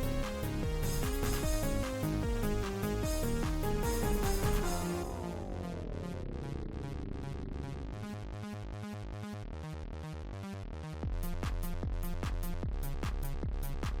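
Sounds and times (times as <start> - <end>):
electronic dance music: 0.0 - 8.1, 11.0 - 14.0.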